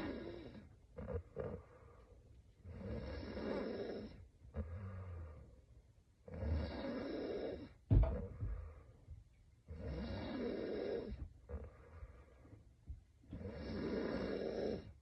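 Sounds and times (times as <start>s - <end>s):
woman snoring: 0.0s - 1.6s, 2.7s - 5.1s, 6.3s - 7.7s, 9.8s - 11.7s, 13.4s - 15.0s.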